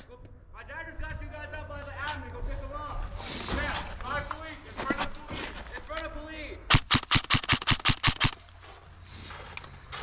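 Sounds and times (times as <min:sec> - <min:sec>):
airsoft gun rapid shots: 0:06.7 - 0:08.4.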